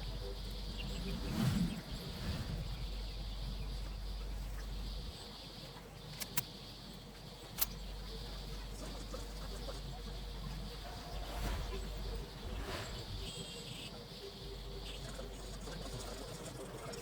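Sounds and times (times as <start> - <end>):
low hum and hiss: 0.0 - 17.0
sharp clicks: 6.1 - 6.5.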